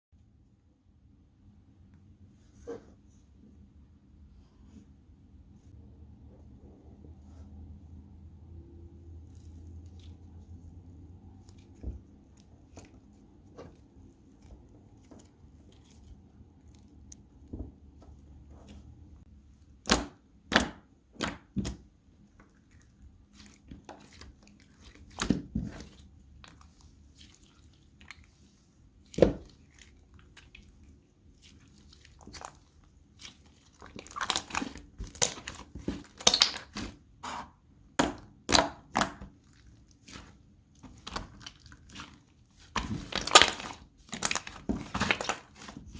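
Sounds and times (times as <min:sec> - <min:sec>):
slime popping and crackling: 0:33.2 - 0:37.0, 0:42.7 - 0:45.8.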